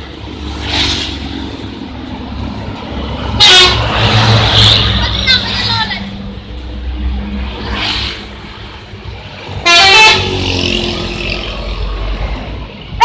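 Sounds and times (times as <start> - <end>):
bus engine rumble: 0.0 - 13.0
multi-tone air horn blast: 3.4 - 4.1, 9.6 - 10.5.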